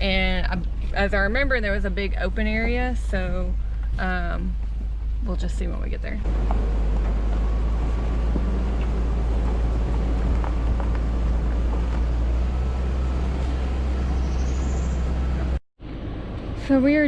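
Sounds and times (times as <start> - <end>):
vehicle driving on dirt road: 0.0 - 17.0
small knocks and rattles: 6.2 - 12.7.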